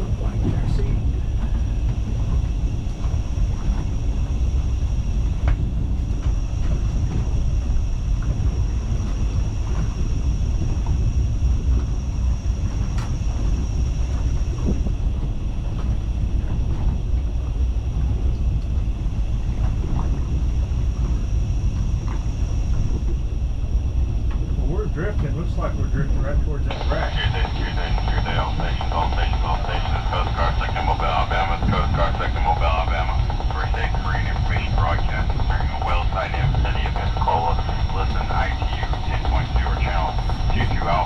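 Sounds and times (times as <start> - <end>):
boat engine low rumble: 0.0 - 41.0
thin high whine: 26.6 - 41.0.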